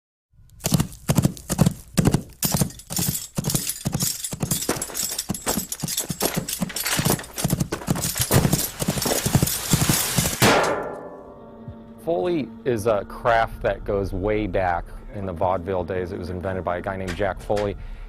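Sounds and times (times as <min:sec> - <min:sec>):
horse hoofbeats clip-clopping: 0:00.6 - 0:10.5.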